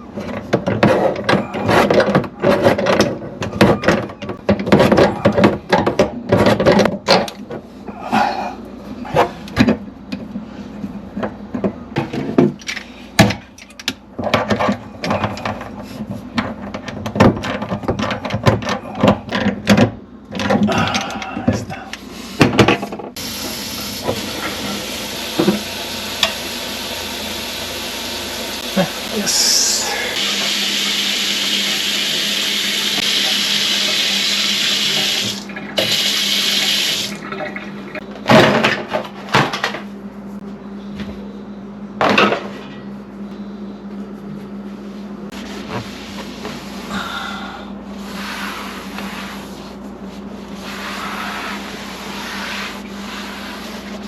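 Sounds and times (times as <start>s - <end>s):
water running from faucet: 23.2s - 37.6s.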